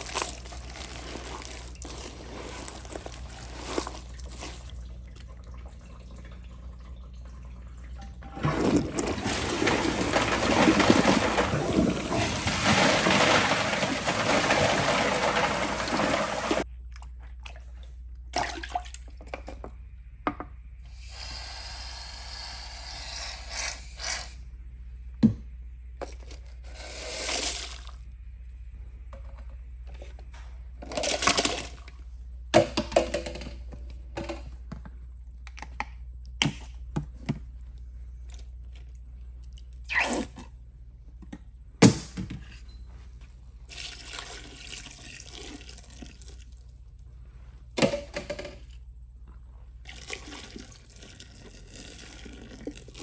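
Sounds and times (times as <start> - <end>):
toilet flushing: 0.0 - 16.7, 43.7 - 46.5, 49.9 - 53.0.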